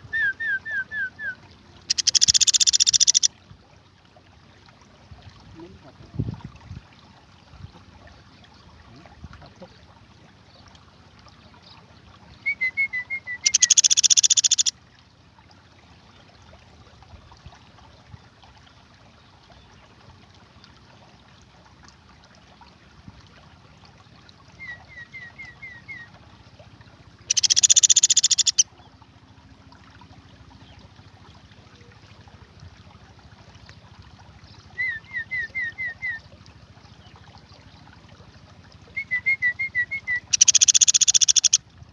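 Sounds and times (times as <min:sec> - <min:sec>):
woodpecker buzzing rattle: 0:01.9 - 0:03.3, 0:13.5 - 0:14.7, 0:27.3 - 0:28.6, 0:40.3 - 0:41.6.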